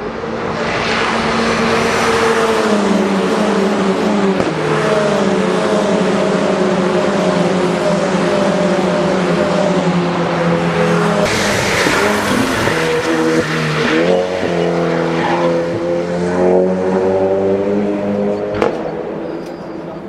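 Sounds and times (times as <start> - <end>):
race car engine running hard: 0.0 - 20.0
hissing tyre noise: 0.5 - 16.8.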